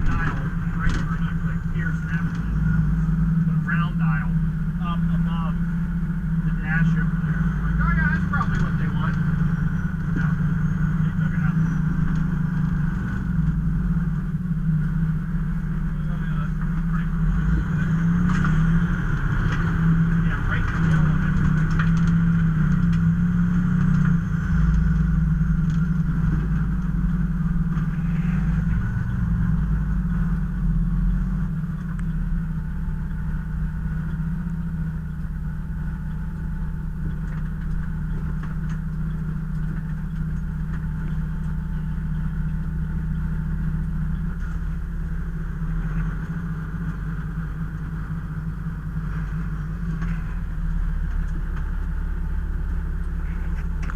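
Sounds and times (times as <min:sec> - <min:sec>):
fire truck engine humming: 0:00.0 - 0:53.9
road rumble: 0:00.0 - 0:53.9.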